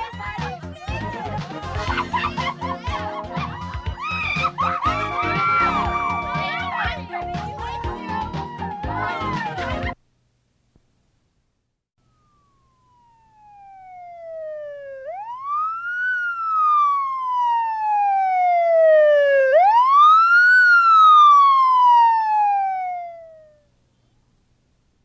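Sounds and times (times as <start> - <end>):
siren wailing: 3.6 - 10.0, 12.0 - 23.7.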